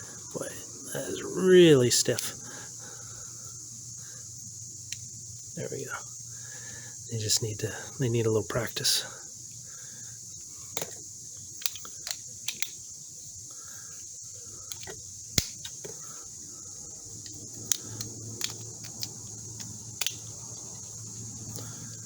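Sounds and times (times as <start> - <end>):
multi-tool blades clicking open and shut: 11.6 - 12.8, 17.2 - 20.3.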